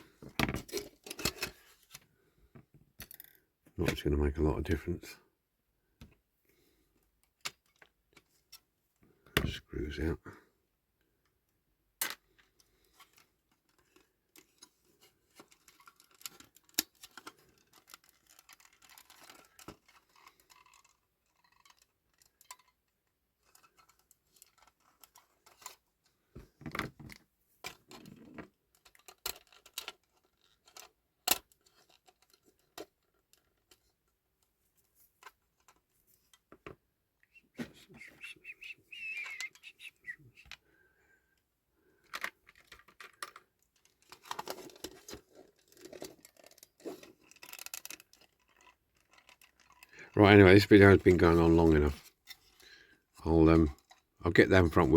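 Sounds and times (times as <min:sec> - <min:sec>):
model car parts clicking: 0:11.2 - 0:36.8, 0:41.3 - 0:49.9.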